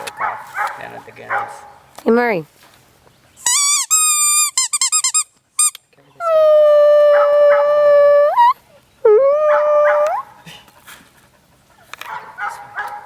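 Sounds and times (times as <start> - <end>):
dog howling: 6.2 - 10.4.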